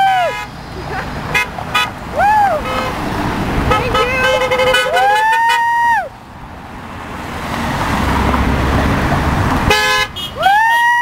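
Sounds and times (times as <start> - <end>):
person cheering: 0.0 - 0.4, 2.1 - 2.7, 3.9 - 6.2, 10.4 - 11.0
cars passing: 0.0 - 11.0
car horn honking: 0.2 - 0.6, 1.3 - 5.7, 9.6 - 10.4.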